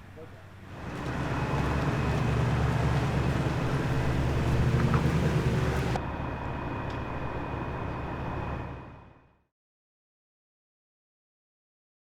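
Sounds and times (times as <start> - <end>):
motor running low rumble: 0.8 - 9.1.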